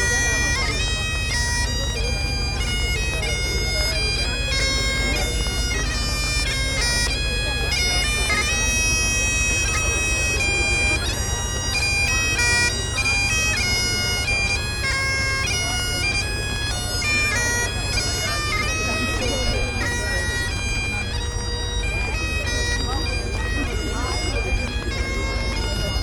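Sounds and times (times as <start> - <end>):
bagpipes playing a tune: 0.0 - 26.0.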